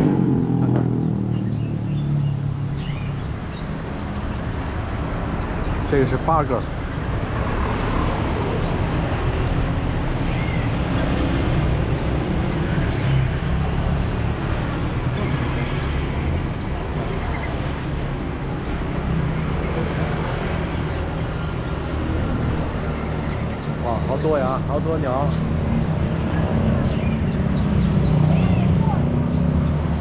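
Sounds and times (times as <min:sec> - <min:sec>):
road traffic rumble: 0:00.0 - 0:30.0
songbirds chirping: 0:00.0 - 0:30.0.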